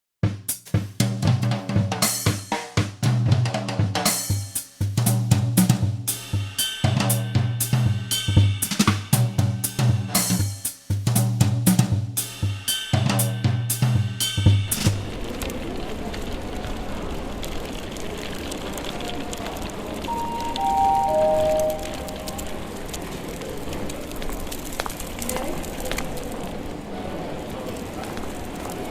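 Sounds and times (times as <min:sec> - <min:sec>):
drum kit beat: 0:00.2 - 0:15.0.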